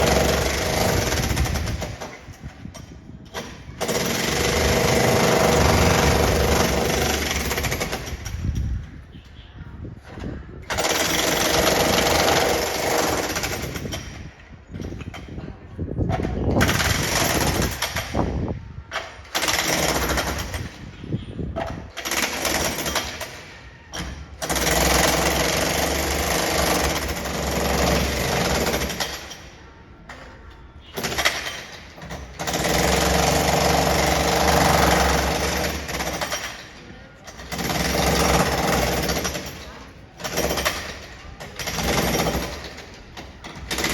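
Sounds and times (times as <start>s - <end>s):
jackhammer chiselling concrete: 0.0s - 2.4s, 3.3s - 8.5s, 10.7s - 14.2s, 16.6s - 18.3s, 19.3s - 20.8s, 21.8s - 29.5s, 31.0s - 43.9s.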